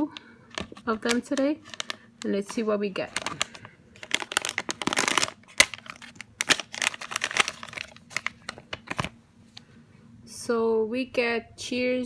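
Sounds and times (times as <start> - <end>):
plastic bag crinkling: 0.6 - 9.2.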